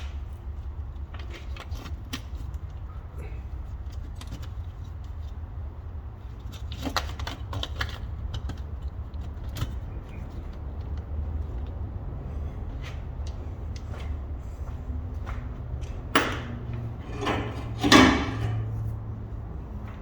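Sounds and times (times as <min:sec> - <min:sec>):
steady low hum: 0:00.0 - 0:20.0
hand tools clinking on metal bolts: 0:15.8 - 0:18.8.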